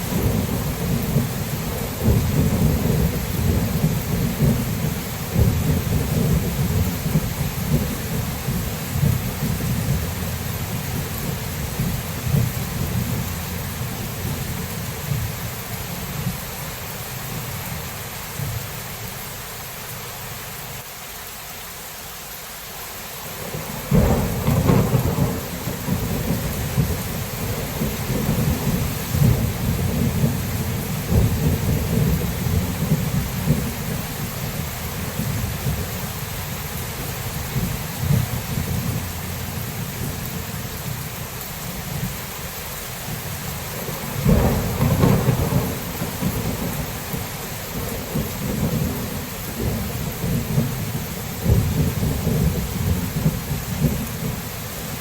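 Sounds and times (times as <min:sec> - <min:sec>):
thunder rumbling: 0:00.0 - 0:16.6, 0:23.4 - 0:42.3, 0:43.1 - 0:55.0
rain hissing: 0:00.0 - 0:55.0
sharp thunderclap: 0:23.8 - 0:33.8, 0:43.9 - 0:50.8, 0:51.4 - 0:54.4.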